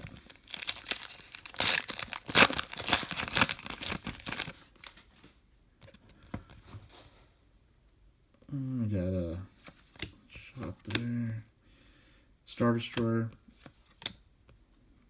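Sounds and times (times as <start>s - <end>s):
wrapper tearing and crinkling: 0.0s - 5.0s.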